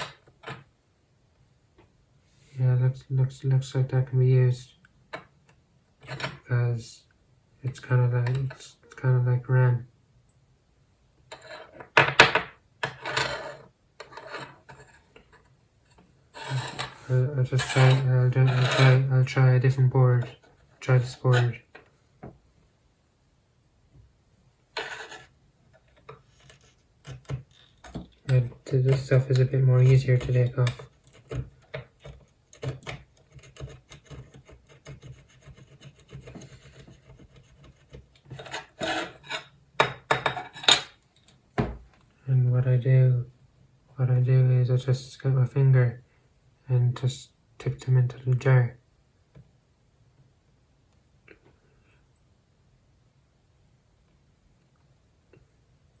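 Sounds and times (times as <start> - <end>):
soldering iron scraping circuit board: 16.4 - 21.6, 24.8 - 25.3, 32.6 - 39.5.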